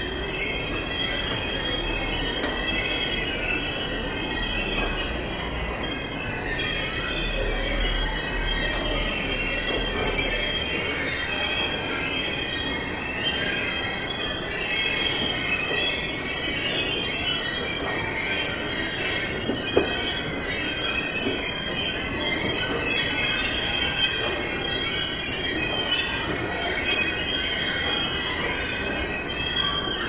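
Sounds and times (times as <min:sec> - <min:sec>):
escalators squealing: 0:00.0 - 0:30.0.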